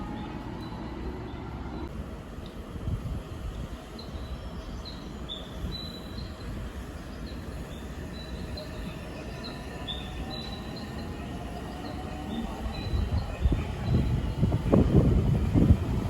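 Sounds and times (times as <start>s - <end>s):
train rumbling: 0.0s - 16.0s
high-pitched train squeaks: 3.9s - 15.8s.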